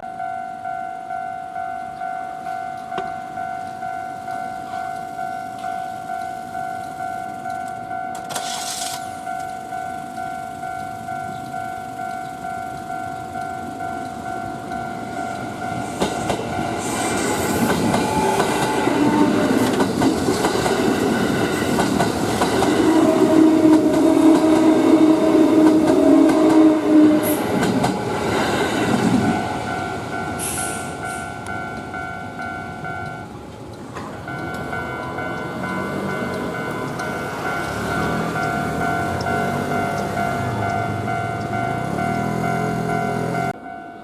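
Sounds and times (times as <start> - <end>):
level crossing bell ringing: 0.0 - 19.8, 27.3 - 44.0
train wheels clattering over rails: 14.1 - 31.9.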